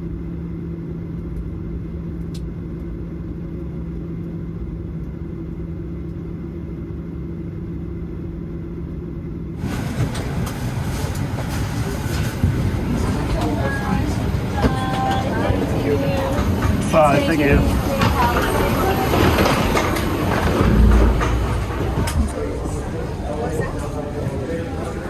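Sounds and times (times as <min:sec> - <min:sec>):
airliner cabin drone: 0:00.0 - 0:25.0
clattering noise: 0:09.6 - 0:24.9.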